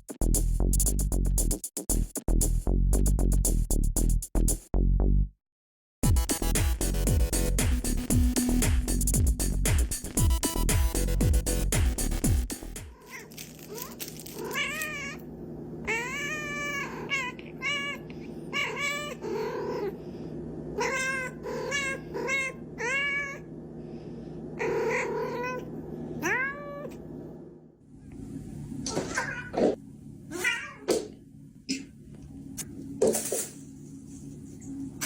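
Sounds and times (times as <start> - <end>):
cat meowing: 13.0 - 15.2, 15.9 - 19.9, 20.8 - 23.4, 24.6 - 27.0, 28.9 - 29.6, 30.3 - 30.9.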